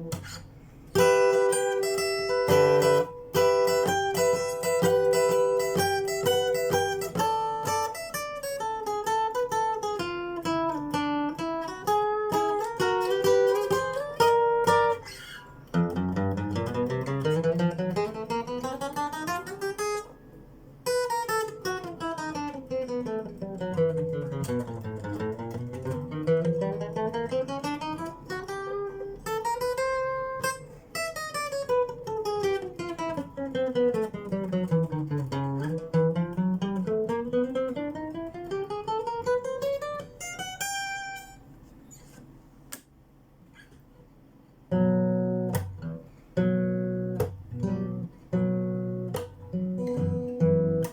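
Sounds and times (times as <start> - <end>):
guitar strummed chords: 0.0 - 20.2, 44.7 - 50.9.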